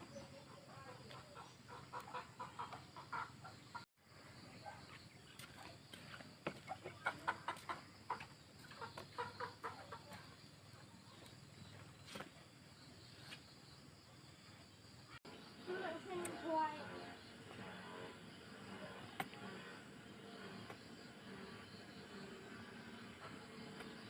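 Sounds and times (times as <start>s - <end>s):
chickens clucking: 0.0s - 3.9s, 5.3s - 11.4s.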